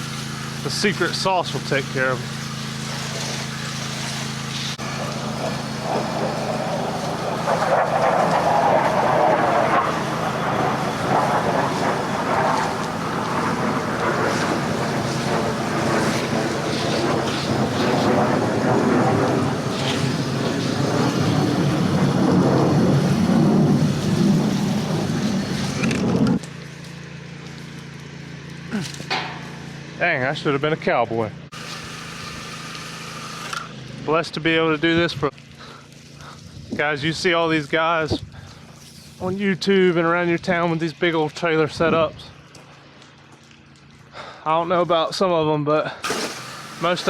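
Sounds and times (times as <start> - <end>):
spray hissing on a wall: 0.0 - 25.9, 31.5 - 33.5, 38.5 - 39.5, 46.0 - 47.0
pressure washer engine running: 0.0 - 44.4, 45.9 - 47.0.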